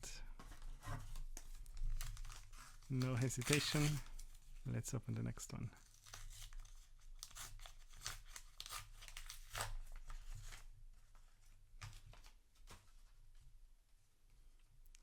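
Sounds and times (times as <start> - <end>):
wrapper tearing and crinkling: 1.1 - 4.6, 5.8 - 10.6.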